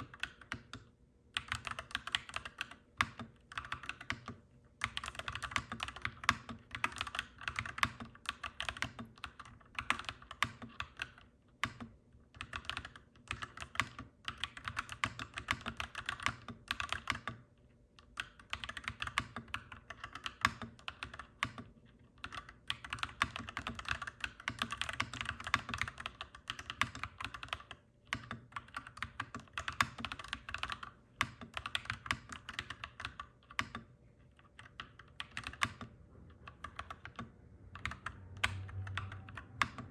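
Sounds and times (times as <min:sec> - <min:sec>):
mechanical keyboard typing: 0:00.0 - 0:39.9.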